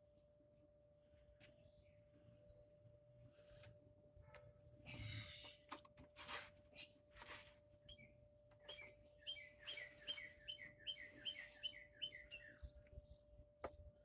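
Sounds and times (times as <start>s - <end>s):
songbird chirping faintly: 7.8s - 13.8s.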